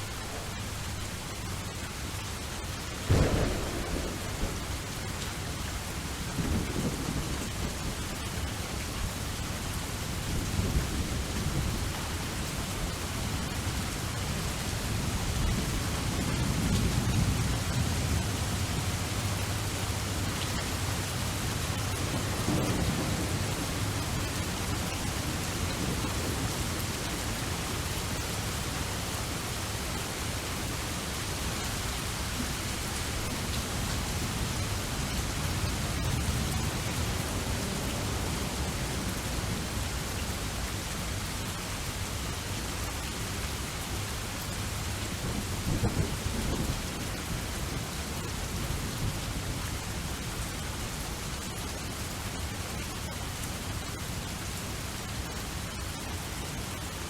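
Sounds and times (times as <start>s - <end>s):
heavy rain: 0.0s - 57.0s
rolling thunder: 3.0s - 8.4s, 14.3s - 29.4s, 45.2s - 47.8s
thunder crack: 3.1s - 5.0s.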